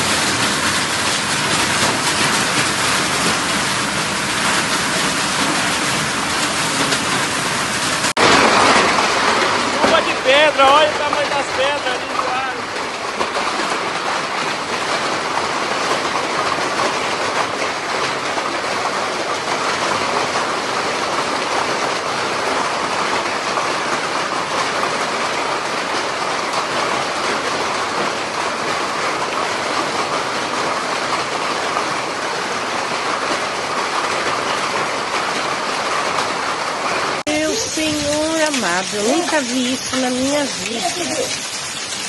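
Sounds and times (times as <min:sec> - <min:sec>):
hailstones striking hard surfaces: 0:00.0 - 0:23.4, 0:37.2 - 0:42.0.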